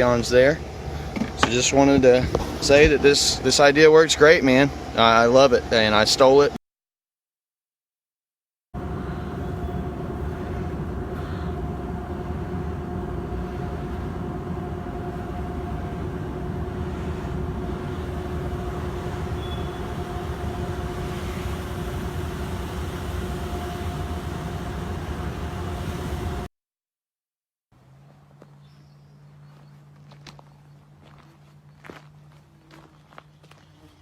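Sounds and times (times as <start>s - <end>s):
machine rumbling and droning: 0.0s - 6.6s, 8.8s - 26.5s.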